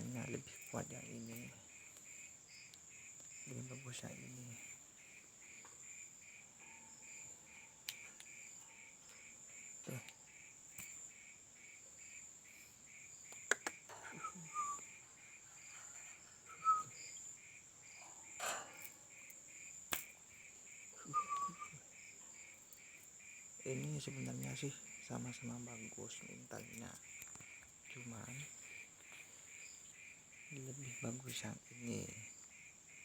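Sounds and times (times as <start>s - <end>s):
crickets chirping: 0.0s - 33.0s
sharp clicks: 13.3s - 13.8s.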